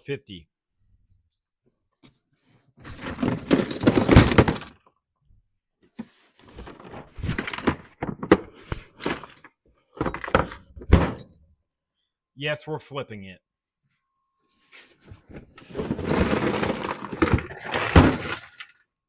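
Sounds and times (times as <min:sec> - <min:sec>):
tool chest thunking and rattling: 0:02.8 - 0:04.8, 0:06.4 - 0:11.4, 0:15.3 - 0:18.6.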